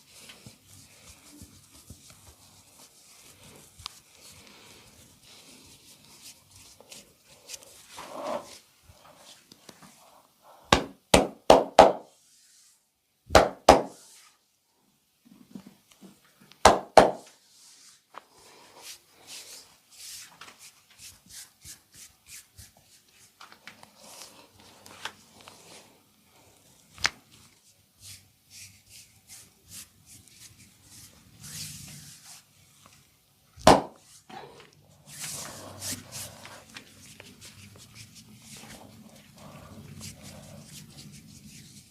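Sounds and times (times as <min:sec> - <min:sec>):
hand slaps of massage: 0:10.7 - 0:12.1, 0:13.3 - 0:14.0, 0:16.6 - 0:17.3, 0:33.6 - 0:34.0.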